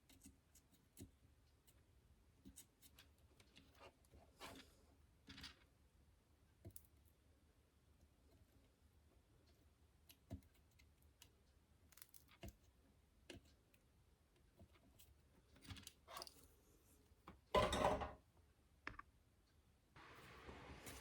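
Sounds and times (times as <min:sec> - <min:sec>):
small clicks and handling noises: 0:00.0 - 0:05.7, 0:09.4 - 0:16.5
rustling scrape: 0:20.0 - 0:21.0.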